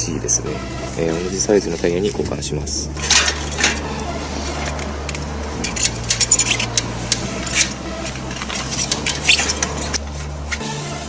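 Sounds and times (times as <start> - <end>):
steady low hum: 0.0 - 11.0
tyre and tube clicks and rustles: 4.4 - 10.7.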